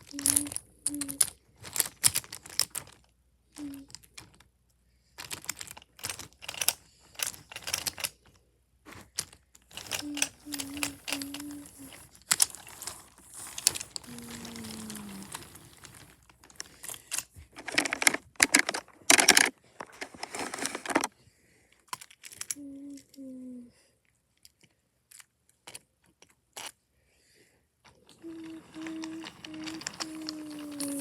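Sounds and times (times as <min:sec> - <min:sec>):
person humming: 0:00.0 - 0:01.3, 0:03.6 - 0:04.0, 0:09.8 - 0:12.1, 0:14.0 - 0:15.7, 0:22.6 - 0:23.7, 0:28.1 - 0:31.0
wooden toy trains clattering: 0:00.0 - 0:04.5, 0:05.2 - 0:21.1, 0:27.9 - 0:31.0.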